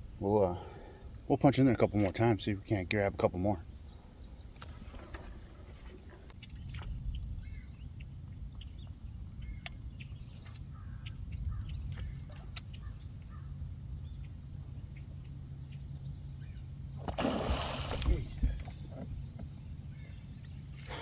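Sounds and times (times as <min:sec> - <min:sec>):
low steady rumble: 0:00.0 - 0:01.7
birds chirping and calling: 0:08.5 - 0:16.9.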